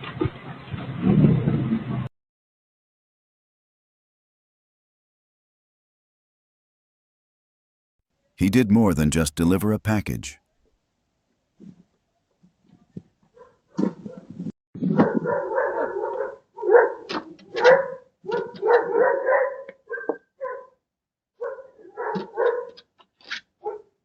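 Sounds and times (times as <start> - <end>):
dog barking: 13.3 - 14.3, 14.9 - 20.8, 21.4 - 22.8, 23.6 - 24.0.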